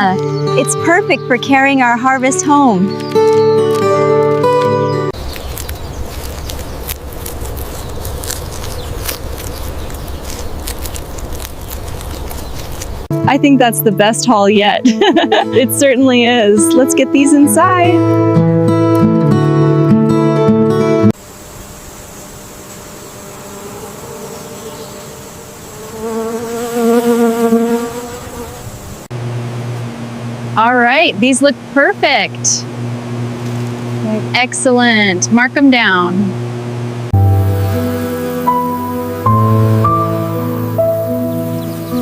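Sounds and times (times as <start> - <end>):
footsteps on outdoor path: 2.8 - 13.1
flying insect buzzing: 5.1 - 13.1, 21.2 - 29.1, 36.4 - 42.0.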